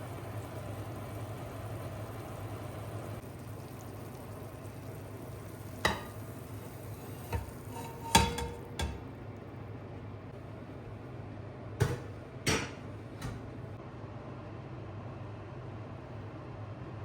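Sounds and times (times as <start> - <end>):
utensils clinking on dishware: 7.0 - 9.0.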